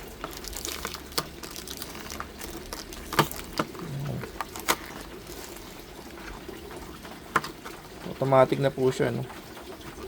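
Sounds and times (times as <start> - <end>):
hands handling packaging clicks: 0.1 - 5.7.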